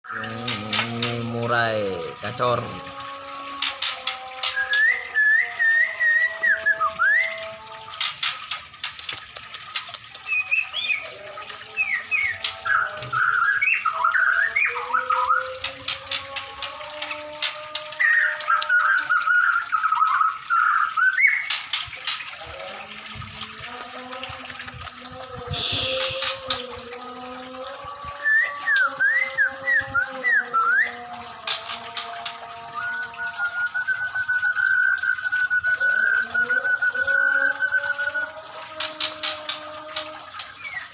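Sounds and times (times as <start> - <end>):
bird whistled song: 4.4 - 7.5, 10.1 - 11.2, 11.8 - 15.7, 17.9 - 21.6, 28.2 - 31.0, 32.8 - 38.4
songbird whistling: 4.6 - 7.4
sharp clicking bird notes: 7.9 - 10.9, 15.4 - 20.2, 23.6 - 26.8, 38.8 - 40.8.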